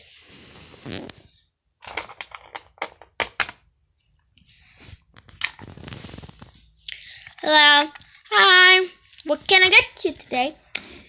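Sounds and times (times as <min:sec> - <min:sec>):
soft rustle: 0:00.0 - 0:01.4, 0:04.0 - 0:06.9.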